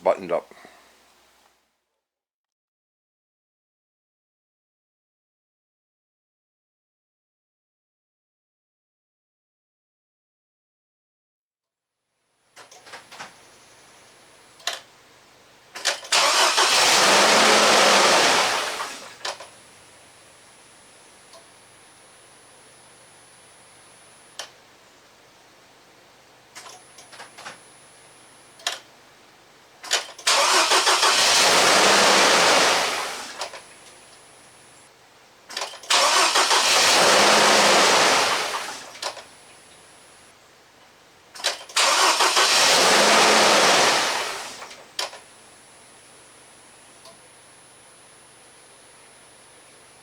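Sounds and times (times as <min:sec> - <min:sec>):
engine cranked by starter: 0:15.7 - 0:19.9, 0:29.8 - 0:34.1, 0:35.5 - 0:39.3, 0:41.4 - 0:45.2.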